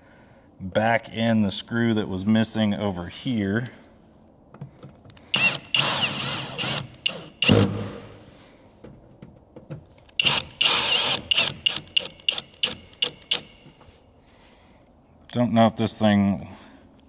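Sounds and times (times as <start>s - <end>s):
cordless drill driving screw: 5.3s - 8.0s, 10.2s - 13.8s
low thump: 7.5s - 8.2s.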